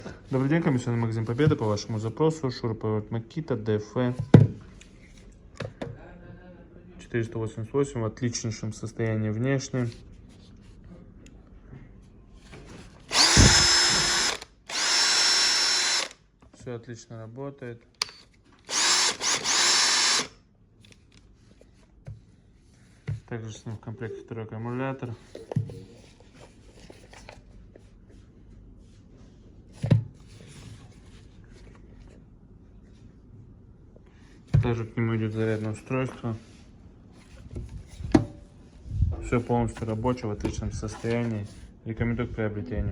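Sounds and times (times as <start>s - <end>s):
cordless drill motor whining: 13.1s - 16.2s, 18.7s - 20.3s.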